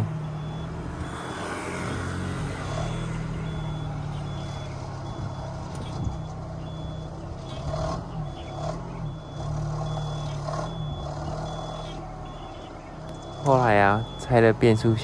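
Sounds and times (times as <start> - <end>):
car engine droning under load: 0.0 - 15.0
reverse warning beeps: 0.0 - 15.0
short transmission knocks: 0.0 - 15.0.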